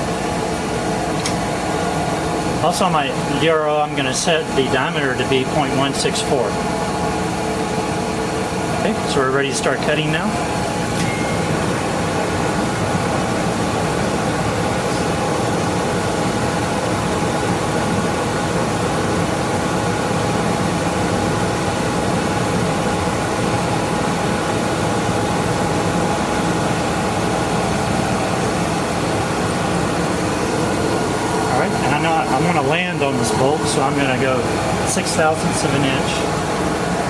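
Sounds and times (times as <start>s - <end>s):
metal lathe motor and gear whine: 0.0s - 20.9s.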